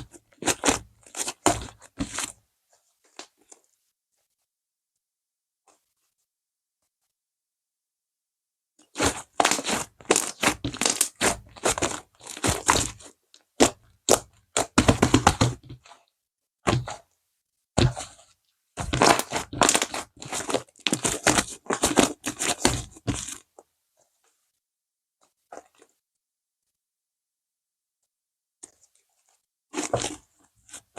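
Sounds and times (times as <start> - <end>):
slime crackling and crunching: 8.9 - 15.4, 18.8 - 23.4.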